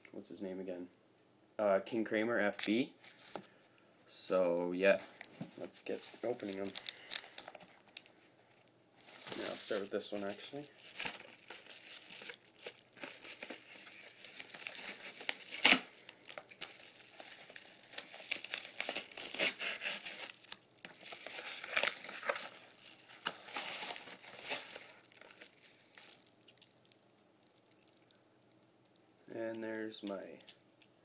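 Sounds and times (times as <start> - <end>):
packaging rustling and crinkling: 5.2 - 28.2.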